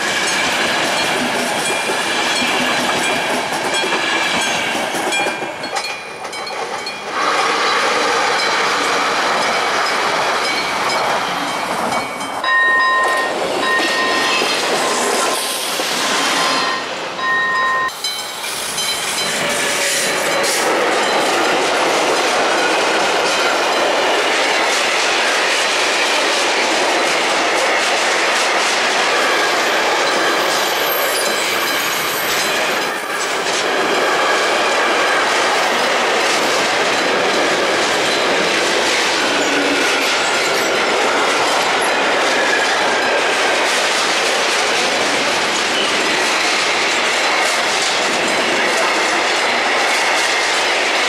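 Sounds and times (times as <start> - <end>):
clickety-clack over rail joints: 0.0 - 16.8, 17.8 - 51.0
train wheels rumbling on rails: 0.0 - 51.0.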